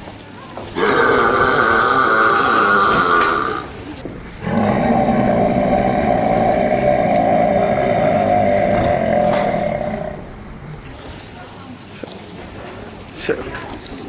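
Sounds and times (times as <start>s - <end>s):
person burping loudly: 0.8s - 10.4s.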